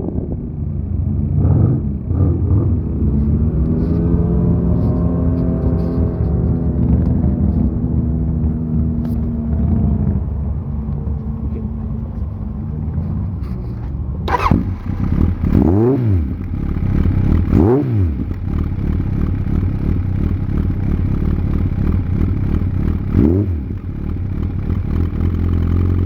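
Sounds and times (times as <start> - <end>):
engine revving: 1.2 - 10.7, 14.3 - 26.0
motorcycle engine idling: 14.2 - 26.0.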